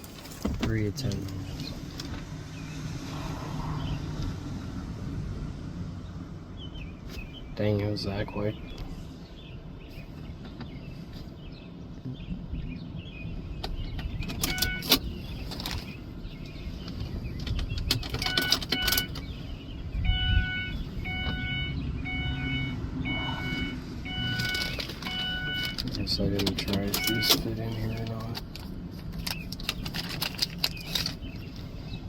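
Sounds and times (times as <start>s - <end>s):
handling clicks and rattles: 0.0s - 2.3s, 13.6s - 16.0s, 16.8s - 19.3s, 24.2s - 31.6s.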